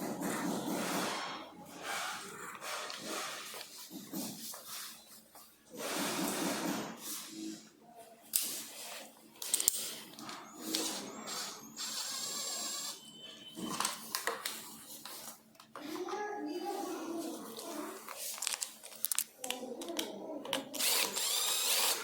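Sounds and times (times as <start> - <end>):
steady whirring: 20.8 - 22.0.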